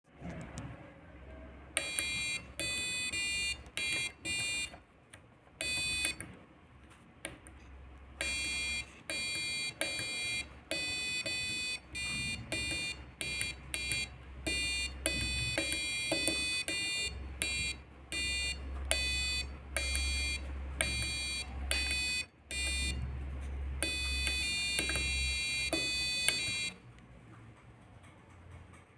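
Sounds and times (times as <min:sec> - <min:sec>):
electronic beeps playing a tune: 0:08.2 - 0:23.0, 0:23.8 - 0:26.8.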